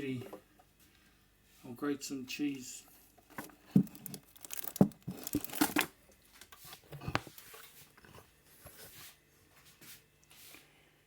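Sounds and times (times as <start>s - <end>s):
crinkling: 3.2s - 8.9s
utensils clicking and knocking: 3.4s - 5.9s.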